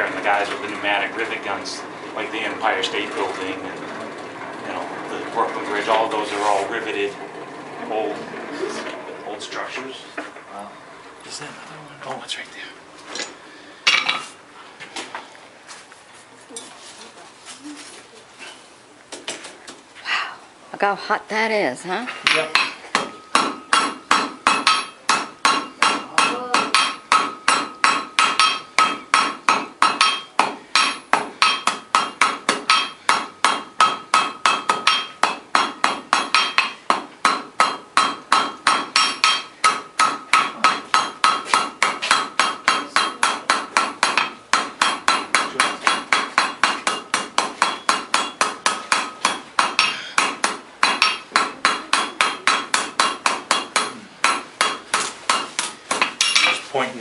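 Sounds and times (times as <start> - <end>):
hammer striking iron on anvil: 13.2 - 14.2, 22.2 - 56.7.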